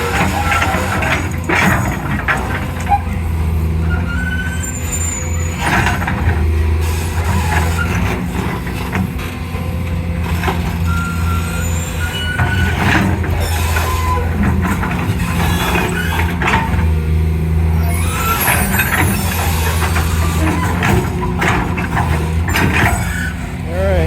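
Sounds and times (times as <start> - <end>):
diesel engine running: 0.0 - 24.0
short high squeaks: 4.0 - 5.8.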